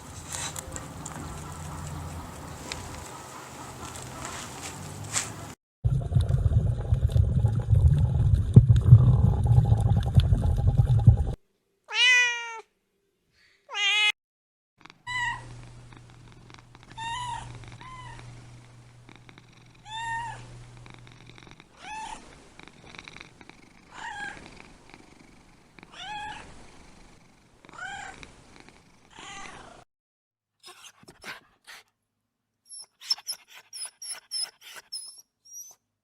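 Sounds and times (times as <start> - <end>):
cat meowing: 11.9 - 12.7.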